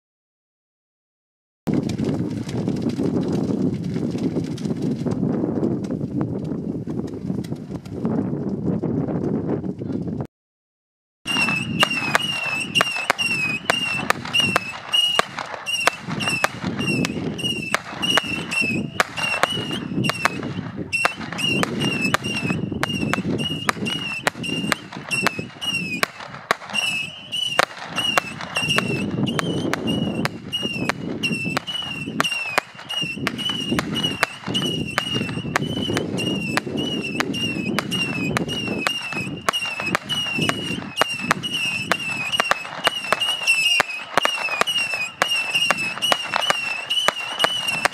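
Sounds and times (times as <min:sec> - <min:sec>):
fireworks bangs and cracks: 0:01.7 - 0:07.9, 0:11.3 - 0:47.9
high-pitched whistle: 0:11.3 - 0:47.9.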